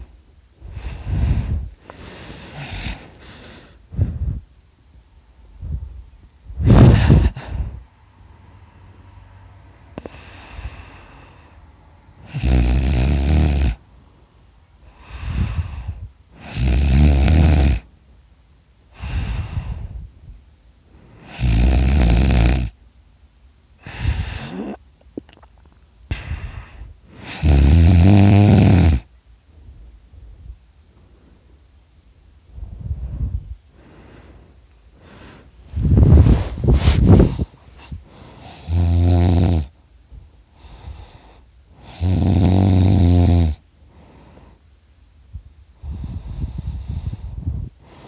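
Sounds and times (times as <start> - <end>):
soft breathing: 0.0 - 12.3, 18.9 - 21.4, 23.8 - 27.4, 29.5 - 38.9, 39.6 - 42.0, 43.6 - 48.0
person snoring loudly: 0.7 - 3.7, 6.6 - 7.7, 12.2 - 13.8, 15.0 - 17.9, 21.2 - 22.8, 27.2 - 29.1, 35.0 - 39.8, 41.8 - 43.6.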